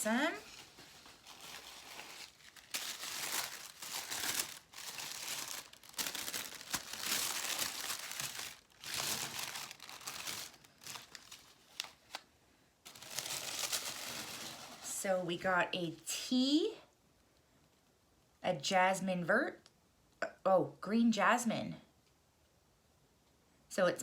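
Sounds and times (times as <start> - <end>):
tissue paper crinkling: 0.0 - 12.2, 12.8 - 15.0.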